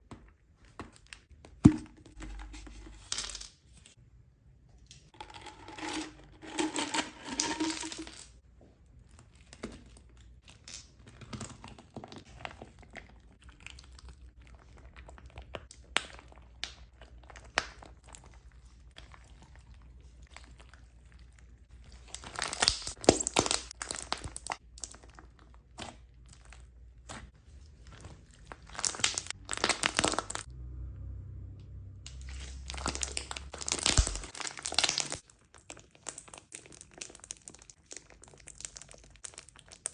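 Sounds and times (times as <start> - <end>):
slime crackling and popping: 20.3 - 27.3, 27.9 - 30.5, 32.1 - 39.9.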